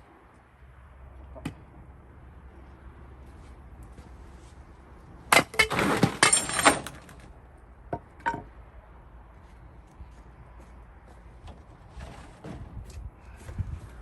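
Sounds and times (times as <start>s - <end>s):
wood cracking and splitting: 5.4s - 7.3s.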